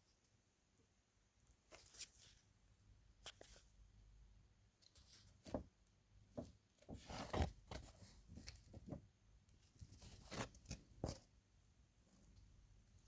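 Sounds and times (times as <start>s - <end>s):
rustling: 1.5s - 2.6s, 4.8s - 13.0s.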